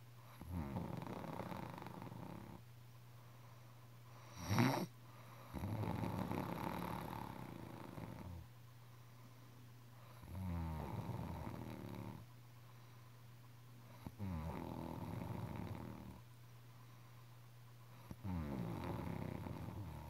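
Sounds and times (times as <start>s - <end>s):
snoring with fluttering rattle: 0.3s - 2.6s, 4.2s - 8.5s, 10.0s - 12.3s, 13.9s - 16.2s, 18.0s - 20.0s.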